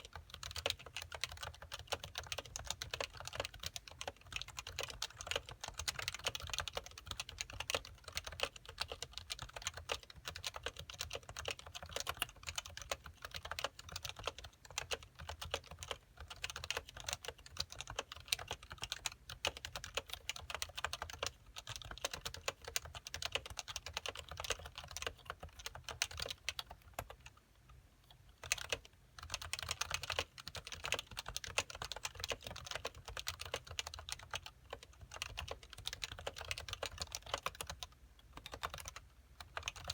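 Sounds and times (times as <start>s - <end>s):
fast keyboard typing: 0.0s - 27.4s, 28.4s - 39.9s.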